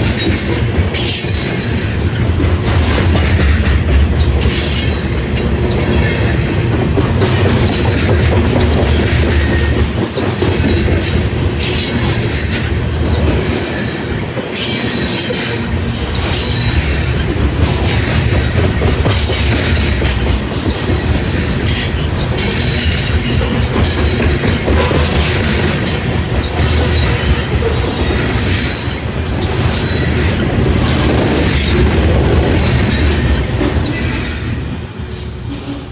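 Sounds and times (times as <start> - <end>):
wheels clacking over rail joints: 0.0 - 35.5
train cars rumbling past: 0.0 - 35.9.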